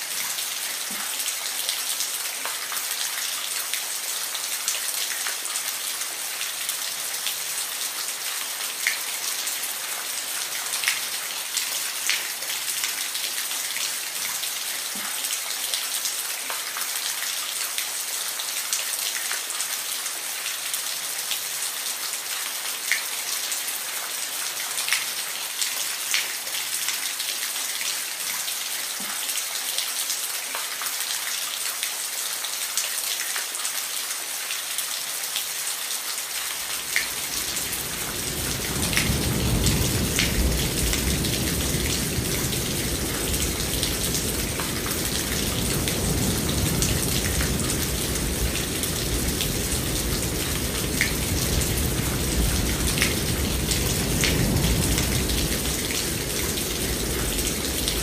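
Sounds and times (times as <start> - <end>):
steady rain falling: 0.0 - 58.0
thunder rumbling: 36.8 - 58.0.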